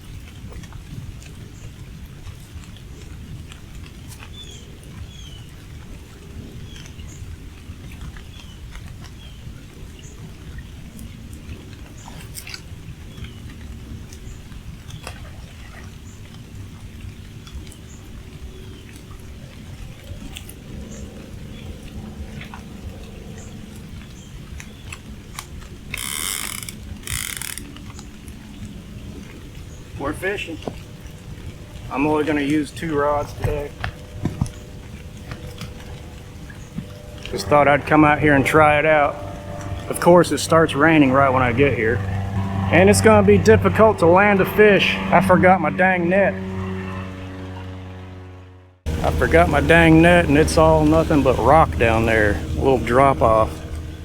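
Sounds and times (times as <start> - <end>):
rain pattering: 0.0 - 45.1, 48.9 - 54.0
low rumble: 18.1 - 54.0
fishing reel ratcheting: 25.9 - 27.8.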